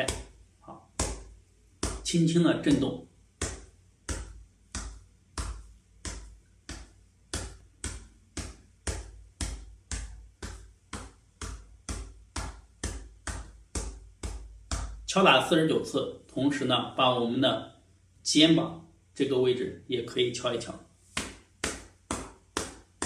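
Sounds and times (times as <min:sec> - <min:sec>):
fist patting chest thuds: 0:00.0 - 0:02.1, 0:02.7 - 0:15.1, 0:21.1 - 0:23.0.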